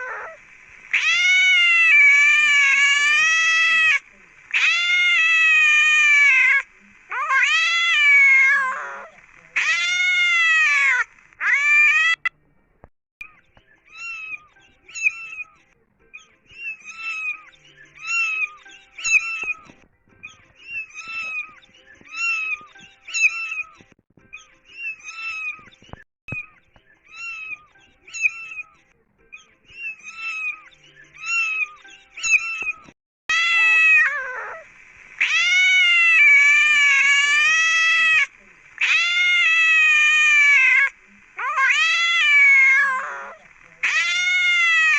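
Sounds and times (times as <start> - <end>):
cat meows: 0.0 - 12.3, 29.8 - 34.6, 35.2 - 44.9
kitten mewing: 0.0 - 12.3, 31.2 - 44.9.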